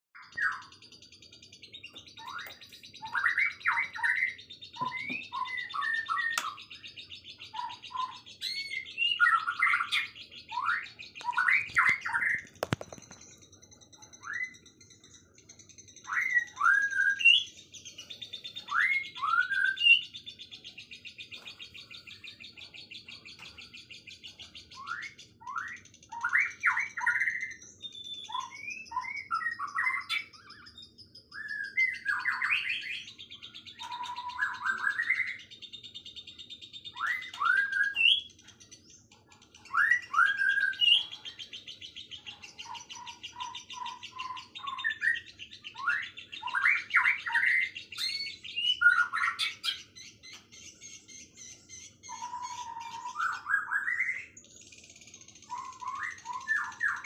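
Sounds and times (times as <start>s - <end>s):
songbirds whistling: 0.2s - 57.0s.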